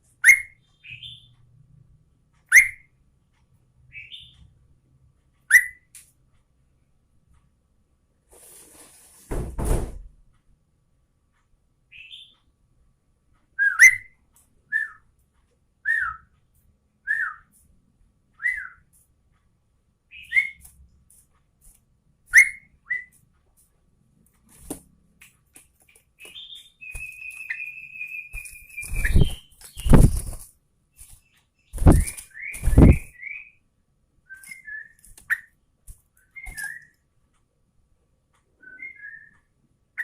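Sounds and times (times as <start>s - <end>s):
loud thumps: 9.3s - 10.1s, 28.9s - 30.4s, 31.8s - 33.1s
bird whistled calls: 13.6s - 14.1s, 15.8s - 16.2s, 26.2s - 30.0s, 31.8s - 33.5s.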